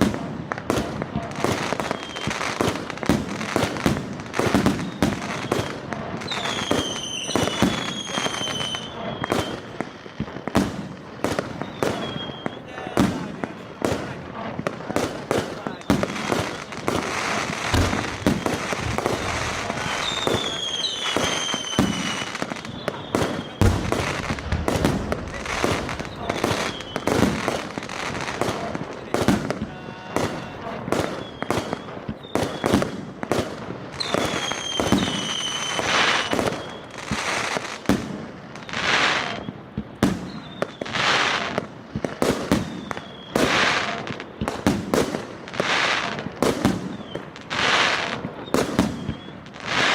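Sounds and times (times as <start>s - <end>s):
firework aerial bursts: 0.0s - 39.5s
falling firework whistles: 1.4s - 13.2s, 15.1s - 41.6s, 42.2s - 49.9s
firework hissing: 4.5s - 29.7s
firework launch thumps: 17.7s - 20.6s, 23.5s - 27.9s.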